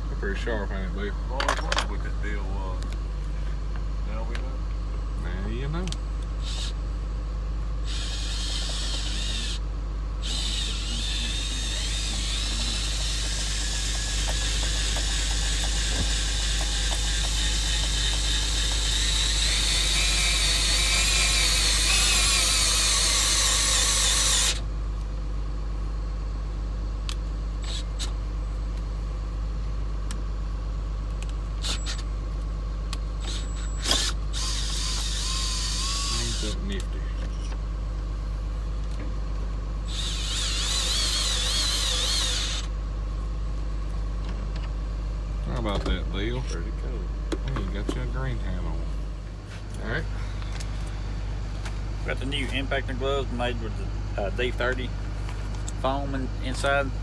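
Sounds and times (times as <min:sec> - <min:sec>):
steady low hum: 0:00.0 - 0:57.0
power tool motor whirring: 0:06.4 - 0:06.8, 0:07.8 - 0:24.6, 0:27.6 - 0:28.2, 0:31.6 - 0:32.1, 0:33.2 - 0:37.6, 0:39.8 - 0:42.7.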